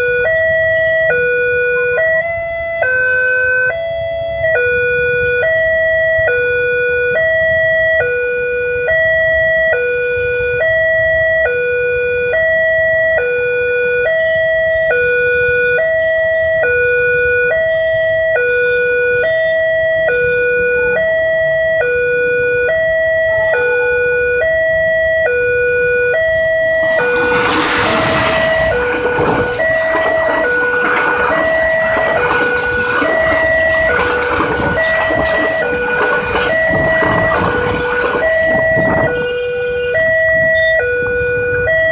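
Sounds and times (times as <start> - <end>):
two-tone wailing siren: 0.0 - 41.9
train rushing rumble: 26.3 - 41.2.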